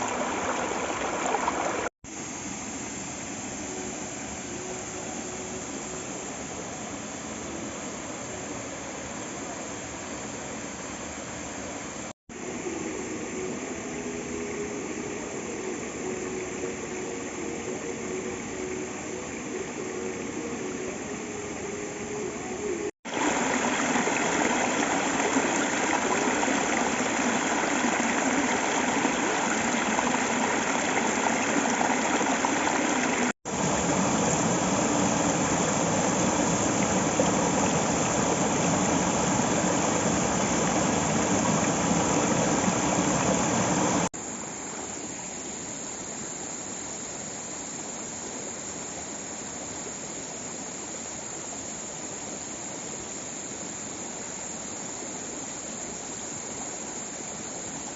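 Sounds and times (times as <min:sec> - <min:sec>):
waterfall roaring: 0:00.0 - 0:01.9, 0:23.1 - 0:44.1
faint steady hum: 0:00.0 - 0:57.9.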